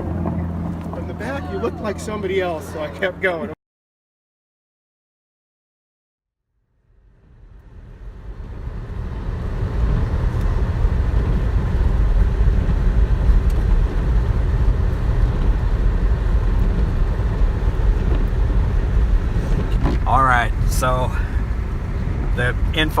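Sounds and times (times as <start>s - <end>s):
car road and engine rumble: 0.0s - 3.6s, 6.7s - 23.0s.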